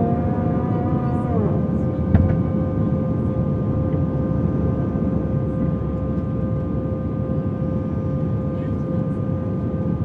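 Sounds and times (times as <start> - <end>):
steady whining tones: 0.0 - 7.2
jet engine and airflow roar: 0.0 - 10.0.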